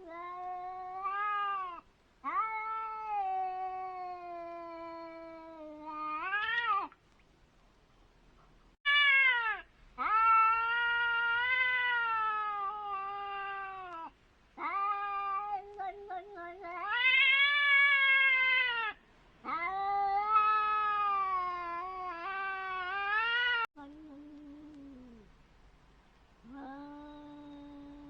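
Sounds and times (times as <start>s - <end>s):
cats yowling: 0.0s - 6.9s, 8.9s - 23.7s.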